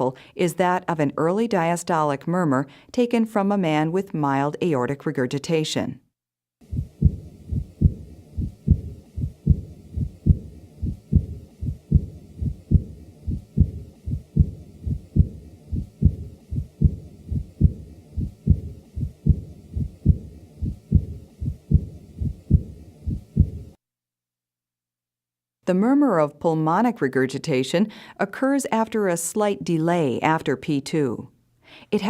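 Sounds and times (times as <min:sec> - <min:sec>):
heart murmur: 0:06.6 - 0:23.8
heartbeat: 0:06.6 - 0:23.8.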